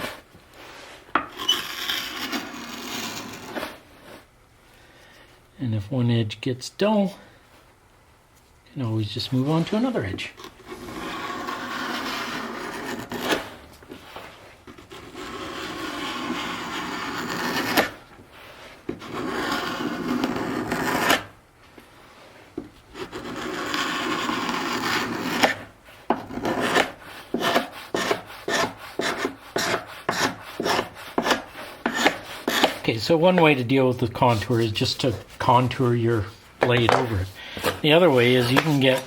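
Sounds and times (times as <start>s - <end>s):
scraper scraping wood: 0.0s - 4.2s, 10.4s - 21.3s, 22.9s - 39.0s.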